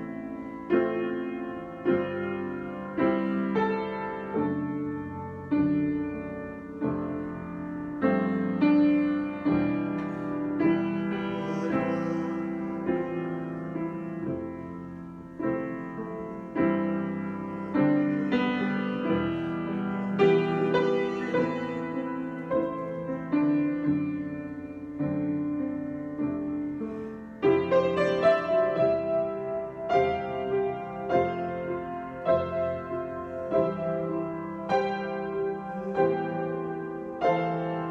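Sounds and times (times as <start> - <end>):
slow piano chords: 0.0 - 37.9.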